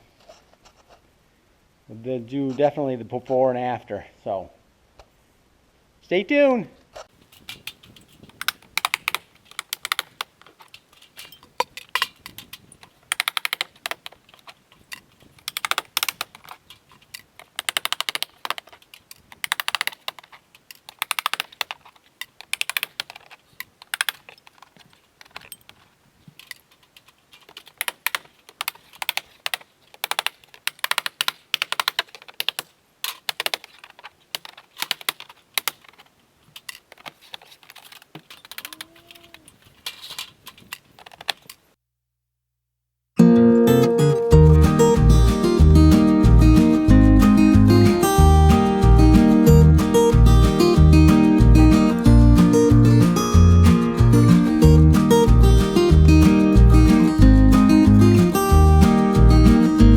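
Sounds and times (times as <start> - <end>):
rapid sharp clicks and taps: 7.5 - 10.3, 13.1 - 14.2, 17.6 - 18.8, 44.6 - 59.9.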